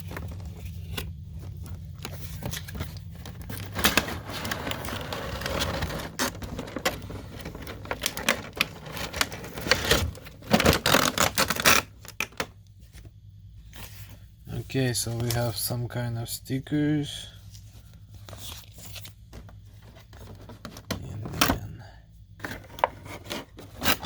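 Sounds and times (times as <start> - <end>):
packaging rustling and crinkling: 0.0 - 13.1, 17.5 - 20.9
low steady hum: 0.0 - 24.0.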